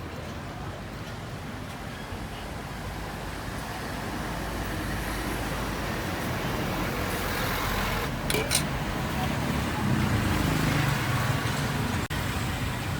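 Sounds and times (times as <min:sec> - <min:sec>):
street traffic passing: 0:00.0 - 0:12.9.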